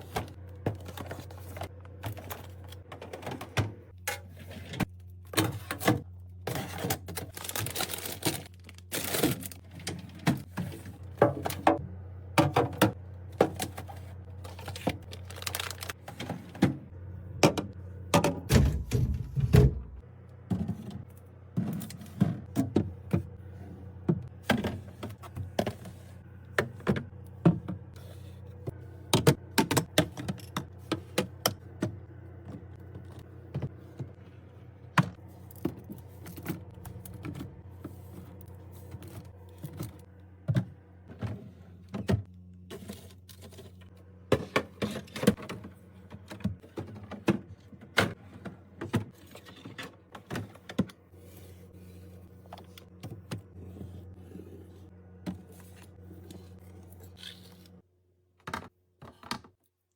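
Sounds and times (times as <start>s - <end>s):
groceries set down in refrigerator: 12.4s - 16.8s.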